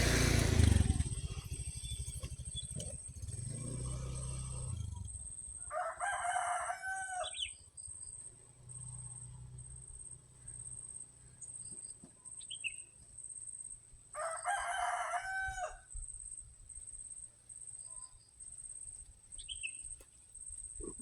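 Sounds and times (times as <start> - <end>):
rooster crowing: 5.6 - 7.5, 14.2 - 16.0.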